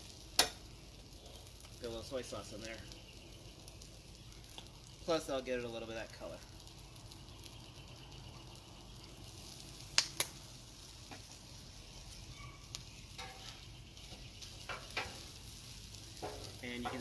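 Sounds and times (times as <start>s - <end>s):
rice sizzling on a griddle: 0.0s - 17.0s
spatula scraping griddle: 12.1s - 17.0s.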